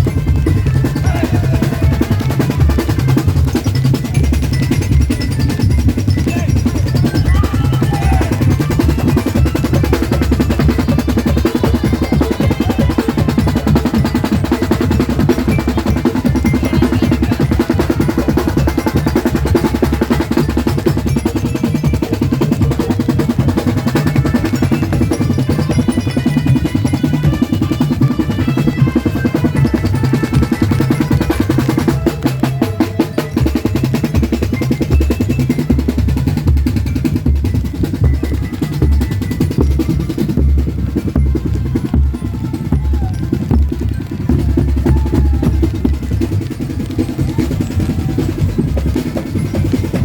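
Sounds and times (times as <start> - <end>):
snare drum rolls: 0.0 - 50.0
booming bass drum: 36.4 - 50.0.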